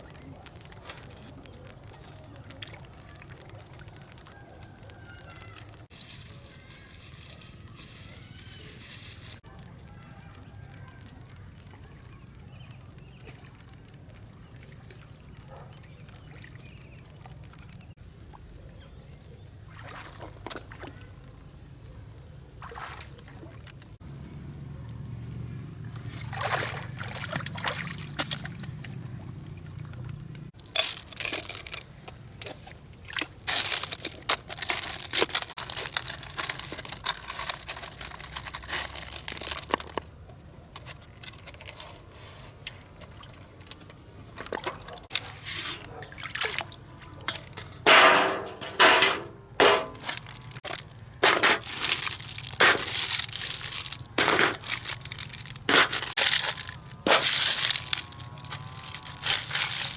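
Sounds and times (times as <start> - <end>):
water trickling and pouring: 0.0 - 6.3, 22.6 - 40.0, 49.6 - 59.9
water splashing and sloshing: 0.0 - 6.4, 10.3 - 18.8, 19.4 - 21.5, 22.5 - 59.9.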